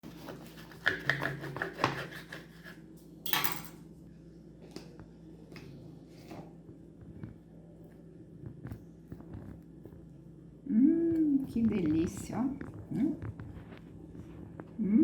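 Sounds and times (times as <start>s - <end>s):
kitchenware clinking and knocking: 3.3s - 3.8s.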